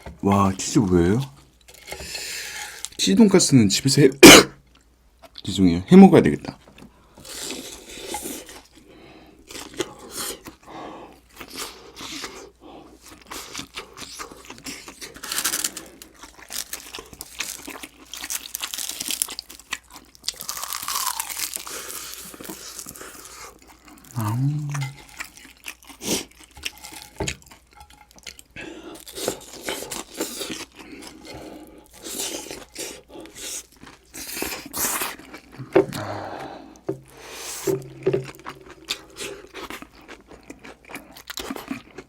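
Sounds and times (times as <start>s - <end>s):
crunching and chewing: 6.6s - 42.0s
person humming: 24.1s - 25.0s, 35.8s - 36.7s.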